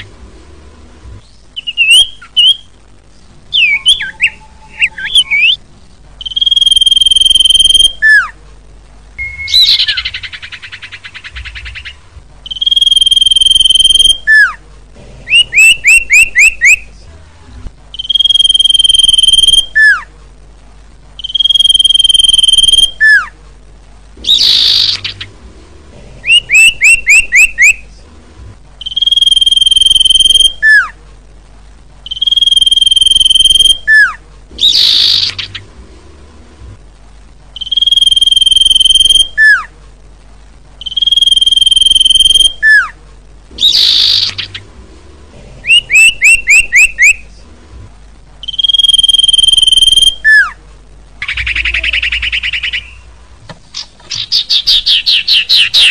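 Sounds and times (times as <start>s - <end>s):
bird whistled song: 1.2s - 2.7s, 3.5s - 5.6s, 6.2s - 8.3s, 9.2s - 14.6s, 15.3s - 16.9s, 17.9s - 20.1s, 21.2s - 23.3s, 24.2s - 25.3s, 26.3s - 27.8s, 28.8s - 30.9s, 32.0s - 35.6s, 37.6s - 39.7s, 40.8s - 43.0s, 43.6s - 44.6s, 45.6s - 47.2s, 48.4s - 50.6s, 51.2s - 53.0s, 54.1s - 55.9s.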